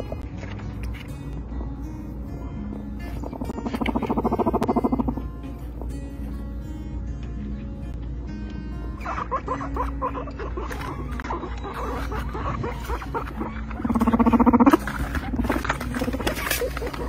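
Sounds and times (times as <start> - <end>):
guinea pigs squeaking: 3.0 - 6.2, 9.0 - 17.0
pulsing buzzy call: 3.1 - 5.9, 13.8 - 14.8.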